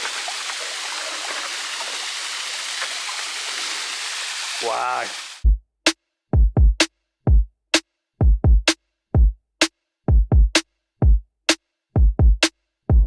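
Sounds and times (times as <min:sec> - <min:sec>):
electronic drum machine beat: 0:12.0 - 0:13.0.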